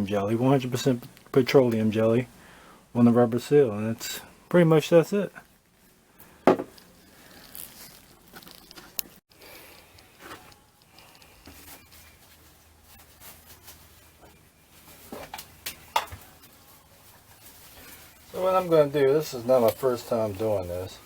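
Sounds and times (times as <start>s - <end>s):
faint rustling and handling: 3.0s - 21.0s.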